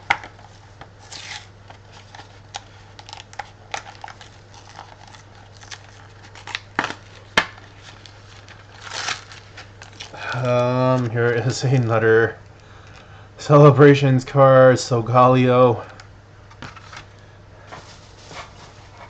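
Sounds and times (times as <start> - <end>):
faint low hum: 0.0 - 19.0
plastic packaging crinkling: 0.2 - 11.9.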